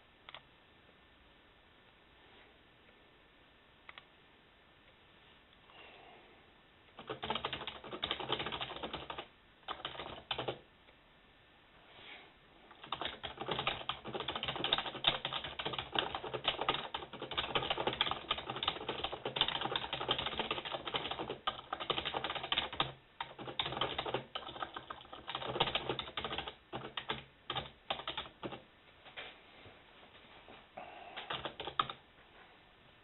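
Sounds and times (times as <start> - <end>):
typing on computer keyboard: 7.0 - 10.6, 12.7 - 28.6, 31.2 - 32.0.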